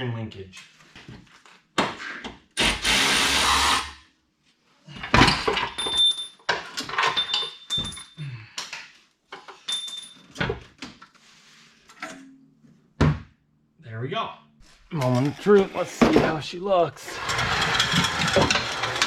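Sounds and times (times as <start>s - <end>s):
power tool whining: 2.6s - 4.0s, 17.1s - 19.0s
metal clanks of tools: 5.0s - 8.2s, 17.1s - 19.0s.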